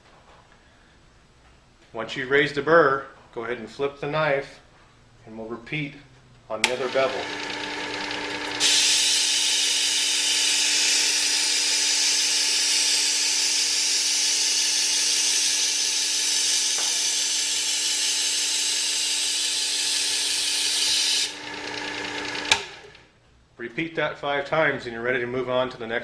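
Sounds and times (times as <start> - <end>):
motor hum: 6.6 - 23.0
knife grinding on sharpener belt: 8.6 - 21.5.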